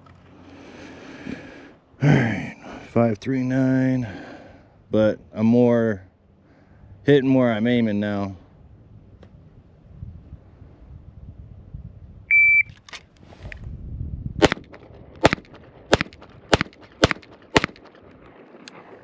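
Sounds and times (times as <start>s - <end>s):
shot timer beep: 12.3s - 12.7s
pistol shots: 14.4s - 19.0s.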